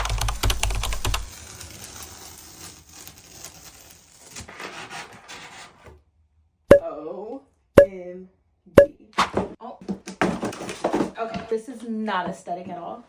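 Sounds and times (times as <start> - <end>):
packaging rustling and scraping: 0.6 - 6.0, 10.0 - 11.9.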